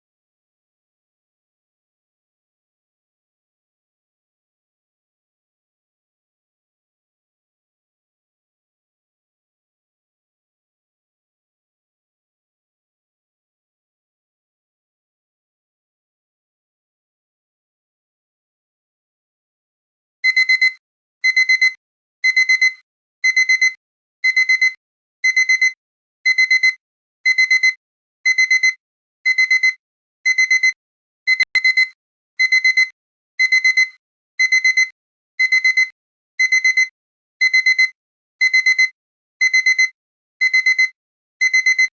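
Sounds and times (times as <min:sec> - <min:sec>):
digital timer alarm beeping: 0:20.2 - 0:41.9.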